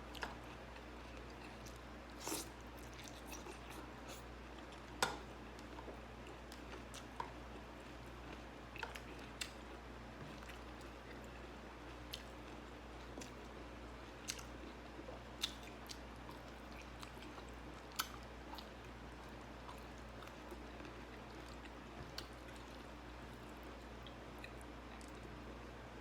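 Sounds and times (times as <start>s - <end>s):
person chewing food: 0.1s - 25.4s.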